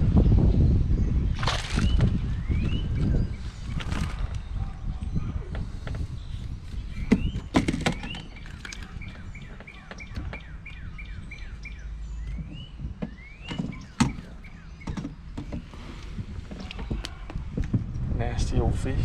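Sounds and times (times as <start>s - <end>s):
songbird whistling: 6.9s - 15.0s.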